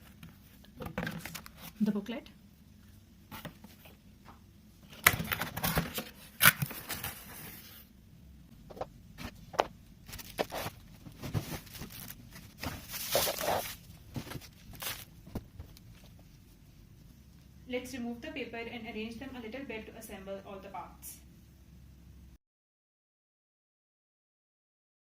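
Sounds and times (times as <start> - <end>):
packaging rustling and crinkling: 4.9 - 7.9, 9.2 - 16.2.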